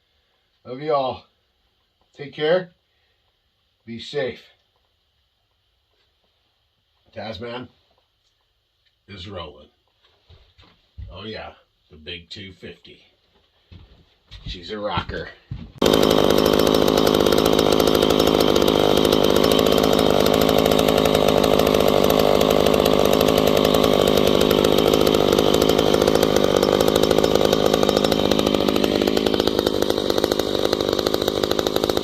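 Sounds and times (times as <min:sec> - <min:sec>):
chainsaw engine running: 0:15.8 - 0:32.0.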